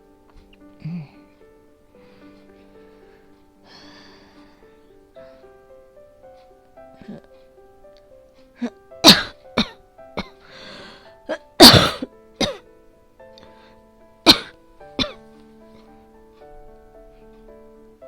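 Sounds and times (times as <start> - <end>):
soft background music: 0.0 - 18.0
rasping breath: 2.0 - 5.5, 10.4 - 11.2
woman coughing harshly: 9.0 - 10.4, 11.3 - 12.6, 14.2 - 15.2.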